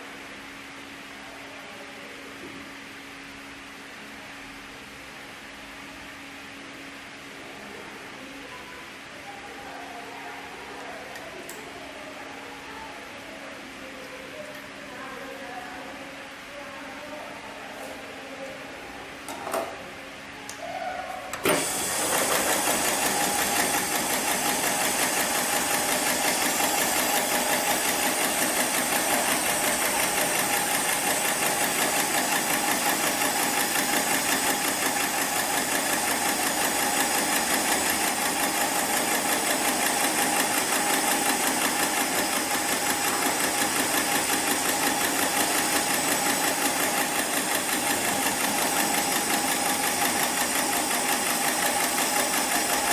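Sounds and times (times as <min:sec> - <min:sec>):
sewing machine stitching rapidly: 0:21.4 - 0:52.9.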